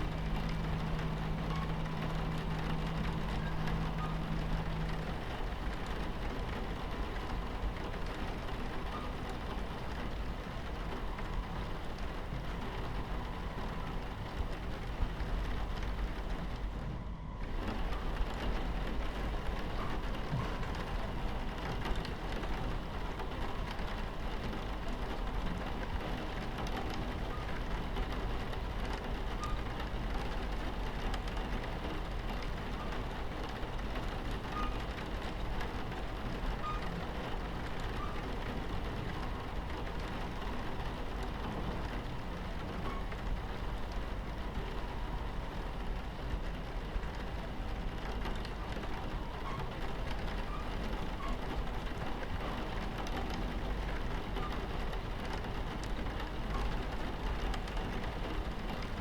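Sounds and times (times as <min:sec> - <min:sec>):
rain on a window: 0:00.0 - 0:59.0
train rumbling on tracks: 0:00.0 - 0:59.0.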